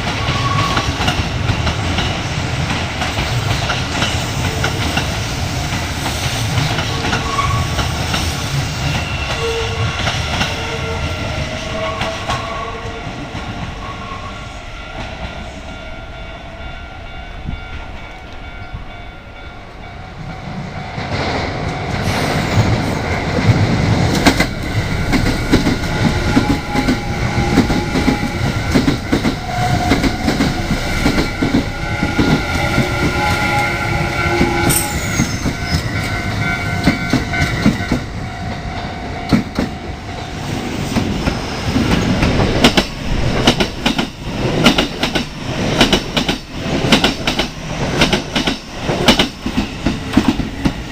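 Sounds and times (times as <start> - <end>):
train wheels clattering over rails: 20.5 - 50.9.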